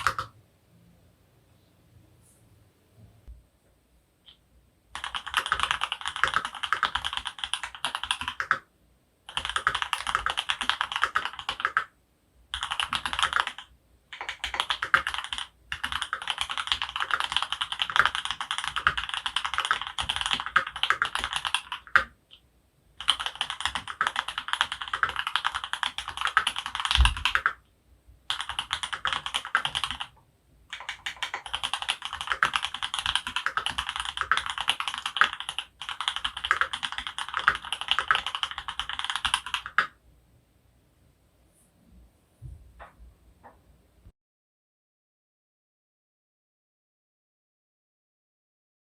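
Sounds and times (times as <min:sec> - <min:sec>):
mechanical keyboard typing: 0:00.0 - 0:00.4, 0:04.9 - 0:08.7, 0:09.3 - 0:11.9, 0:12.5 - 0:22.4, 0:23.0 - 0:27.6, 0:28.3 - 0:40.0.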